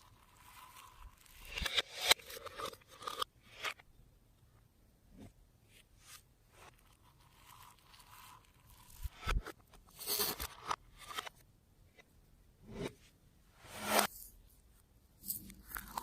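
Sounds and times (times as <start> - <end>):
slime being mixed by hand: 0.0 - 1.7, 6.6 - 9.3.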